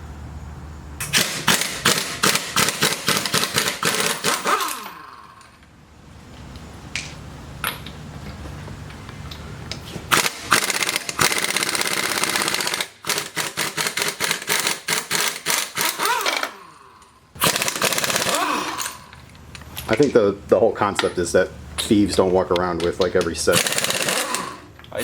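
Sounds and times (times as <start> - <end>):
pneumatic impact wrench hammering: 1.0 - 5.6, 9.7 - 19.4, 23.5 - 25.0.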